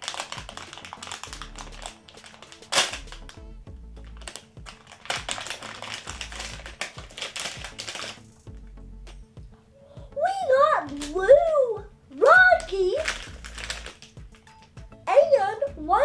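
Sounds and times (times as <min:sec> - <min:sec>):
toy packaging clicking and rustling: 0:00.0 - 0:03.4, 0:04.1 - 0:08.3, 0:12.6 - 0:14.7
background music with low bass: 0:00.0 - 0:16.0.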